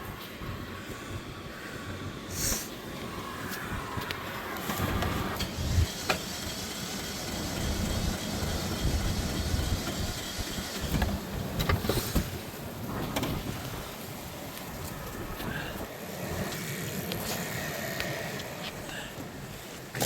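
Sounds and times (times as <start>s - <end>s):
engine running roughly: 4.8s - 12.5s.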